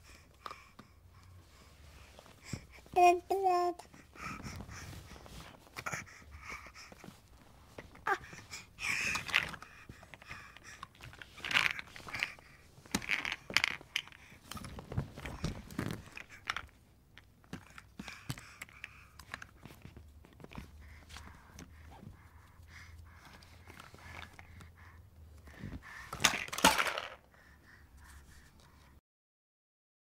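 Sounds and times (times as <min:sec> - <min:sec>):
baby handling toy: 0:01.5 - 0:16.8, 0:23.2 - 0:24.7, 0:25.4 - 0:27.3.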